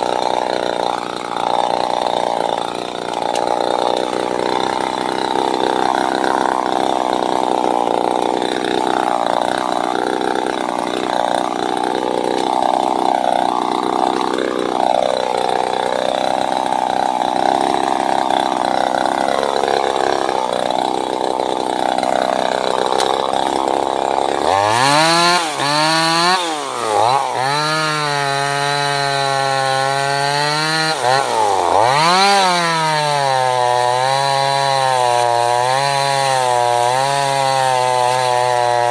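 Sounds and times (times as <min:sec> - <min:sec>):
chainsaw cutting wood: 0:00.0 - 0:38.9
chainsaw engine revving: 0:00.0 - 0:38.9.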